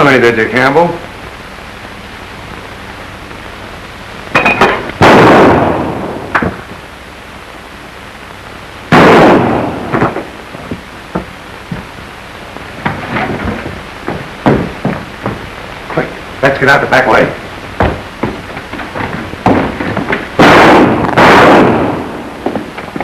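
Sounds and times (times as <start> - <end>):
old film soundtrack hiss: 0.0 - 23.0
loud gunshots: 4.3 - 6.7, 8.9 - 10.4, 19.4 - 23.0.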